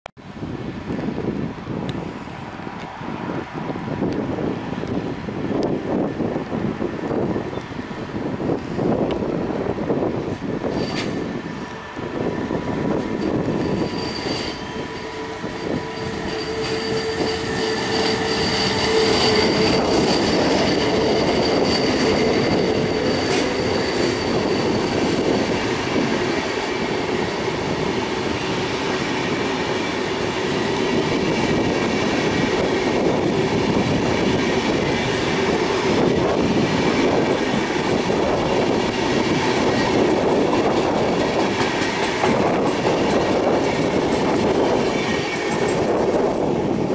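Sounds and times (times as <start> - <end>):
train rumble and clatter: 0.2 - 46.9
train wheels squealing: 10.6 - 46.5.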